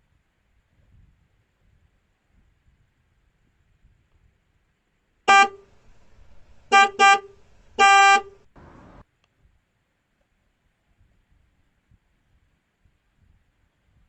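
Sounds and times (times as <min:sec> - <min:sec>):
car horn honking: 0:05.3 - 0:09.0.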